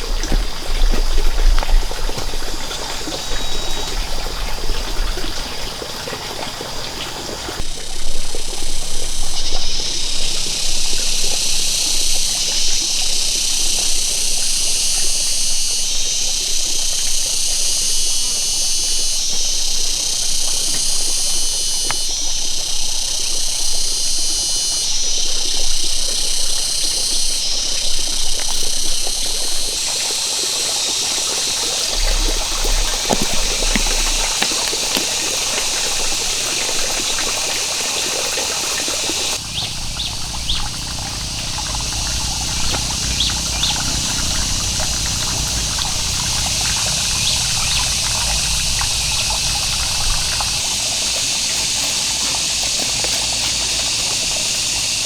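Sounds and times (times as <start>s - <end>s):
water trickling and splashing: 0.0s - 55.0s.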